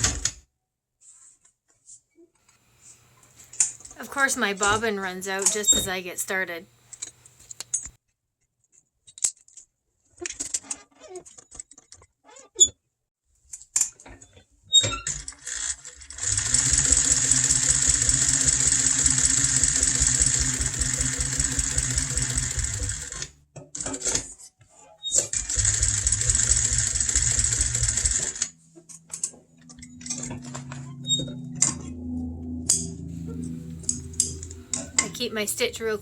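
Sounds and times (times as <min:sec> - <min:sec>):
sewing machine running: 0:16.2 - 0:23.3, 0:25.3 - 0:28.5.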